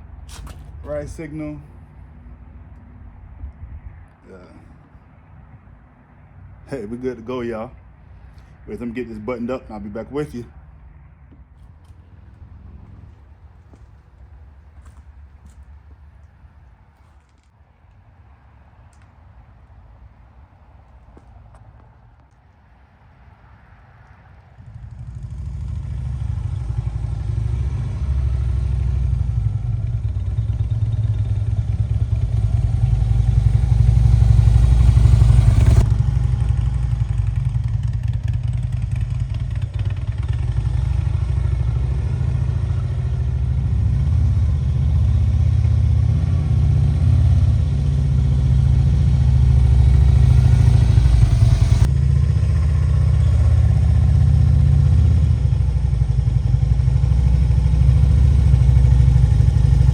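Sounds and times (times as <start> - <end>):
motorcycle engine starting and idling: 0.0 - 1.8, 24.6 - 59.9.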